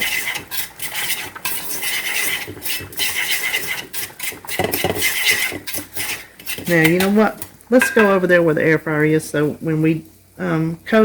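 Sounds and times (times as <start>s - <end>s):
fork beating egg in bowl: 0.0s - 7.3s.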